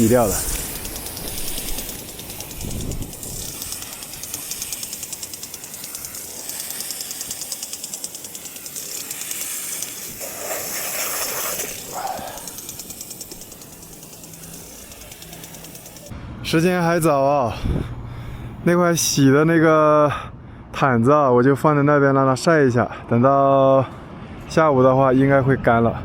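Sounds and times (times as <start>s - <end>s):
sprinkler water hissing: 0.0s - 16.1s.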